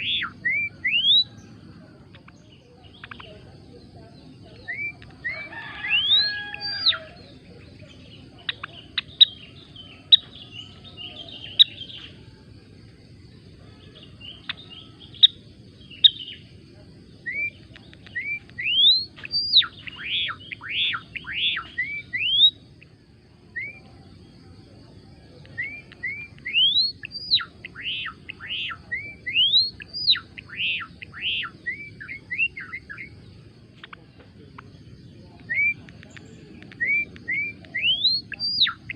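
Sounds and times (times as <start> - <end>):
bird chirping and whistling: 0.0 - 1.3, 4.6 - 7.0, 17.2 - 22.6, 23.6 - 23.9, 25.6 - 33.2, 35.4 - 35.9, 36.6 - 38.9.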